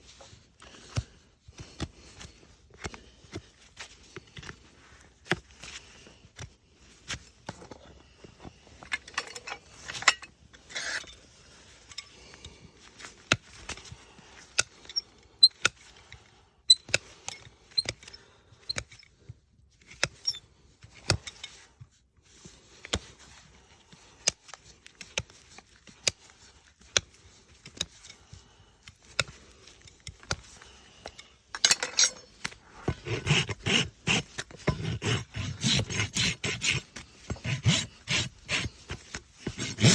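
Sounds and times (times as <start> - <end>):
hoof rasp filing: 20.1 - 20.4, 32.0 - 39.9.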